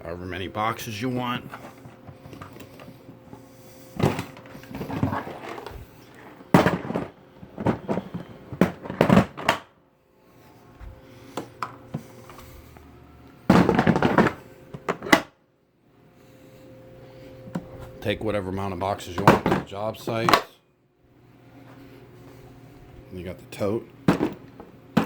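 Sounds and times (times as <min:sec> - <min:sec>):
plastic tool boxes knocking: 0:06.5 - 0:09.7, 0:13.5 - 0:15.3, 0:19.2 - 0:20.5, 0:24.1 - 0:25.0.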